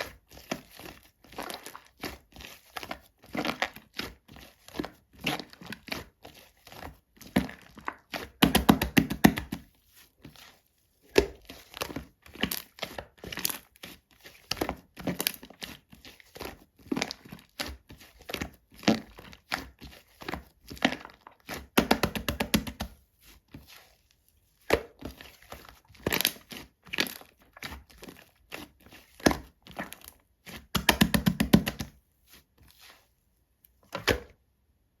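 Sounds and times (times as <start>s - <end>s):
slime squished crackling and popping: 24.6s - 32.0s.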